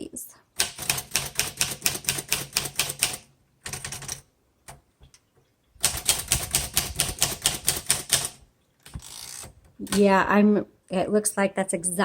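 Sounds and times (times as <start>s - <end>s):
manual typewriter typing: 0.6s - 4.8s, 5.8s - 10.2s.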